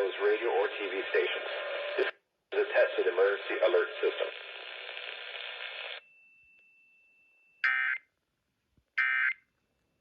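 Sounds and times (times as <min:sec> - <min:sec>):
faint steady high tone: 0:06.0 - 0:08.2.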